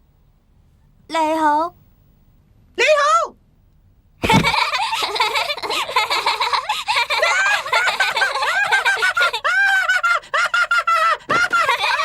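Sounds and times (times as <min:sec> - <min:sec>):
cartoon children giggling: 0:04.2 - 0:12.0.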